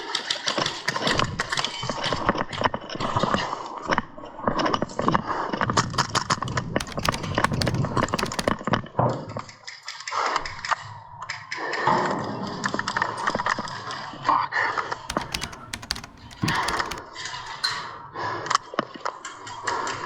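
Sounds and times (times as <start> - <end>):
gear clattering and clicking: 6.8 - 8.6, 15.1 - 17.0.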